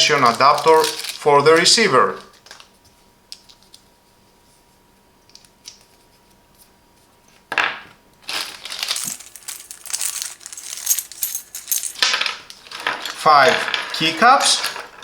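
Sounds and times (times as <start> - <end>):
plastic packaging crinkling: 0.0 - 3.8, 8.2 - 15.0.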